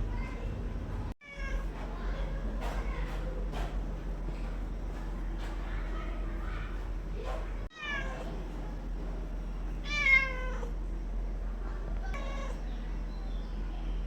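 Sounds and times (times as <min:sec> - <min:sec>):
steady low hum: 0:00.0 - 0:14.0
cat meowing: 0:07.7 - 0:08.3, 0:09.8 - 0:10.7, 0:12.1 - 0:12.6.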